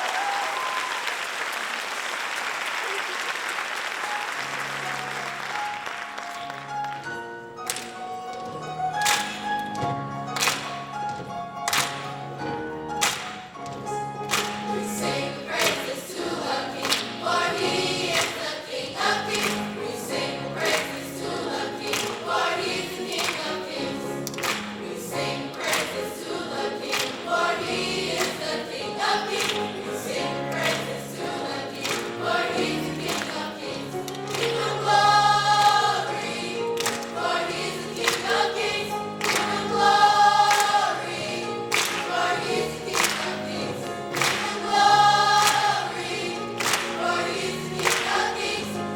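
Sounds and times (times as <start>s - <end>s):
gospel choir singing: 10.6s - 48.9s.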